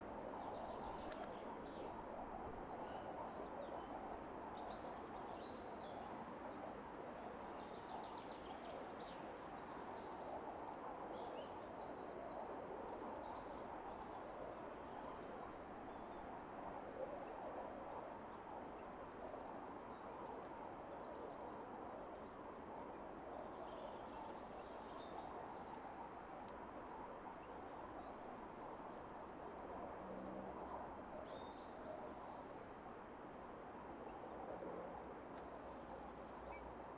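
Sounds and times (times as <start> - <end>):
outdoor background hiss: 0.0 - 36.9
bird chirps: 0.9 - 1.4.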